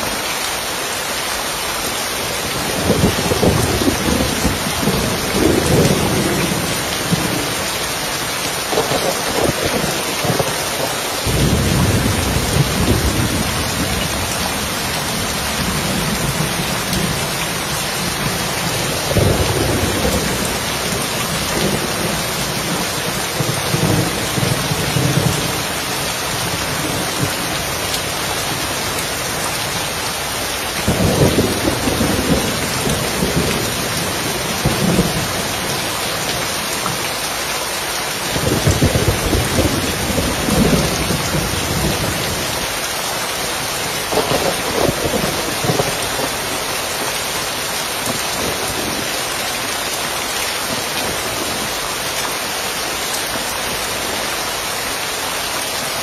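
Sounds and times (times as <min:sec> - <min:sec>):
heavy rain on a roof: 0:00.0 - 0:56.0
thunder rumbling: 0:02.5 - 0:07.7, 0:08.7 - 0:29.8, 0:30.8 - 0:37.0, 0:38.3 - 0:42.6, 0:43.9 - 0:47.1.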